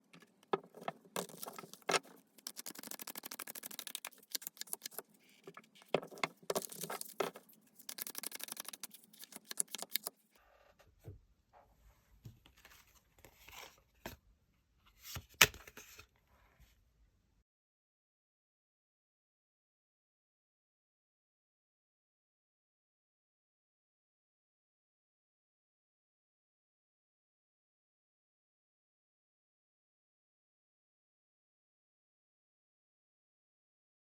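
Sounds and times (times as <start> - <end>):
cards being shuffled: 0.6 - 10.1.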